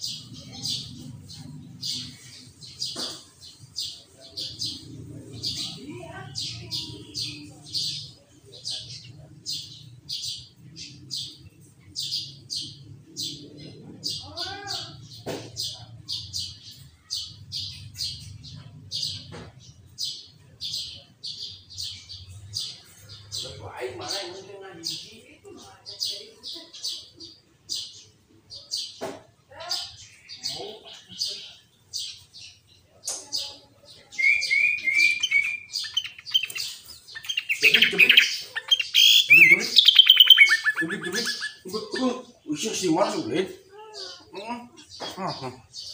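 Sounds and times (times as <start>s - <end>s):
bird singing: 0.0s - 45.9s
bird singing whistled notes: 34.1s - 37.8s, 38.7s - 41.5s.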